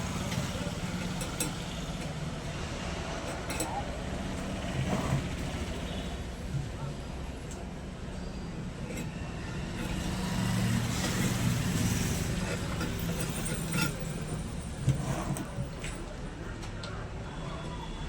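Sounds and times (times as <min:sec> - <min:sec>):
vehicle engine running: 0:00.0 - 0:08.1.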